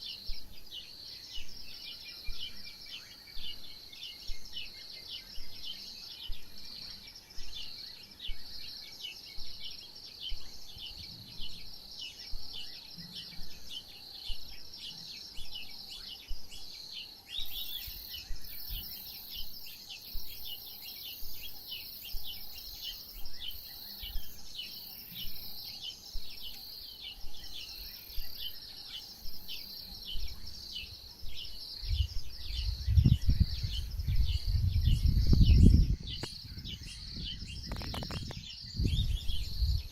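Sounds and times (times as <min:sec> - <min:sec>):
low rumbling thuds: 0:31.2 - 0:39.8.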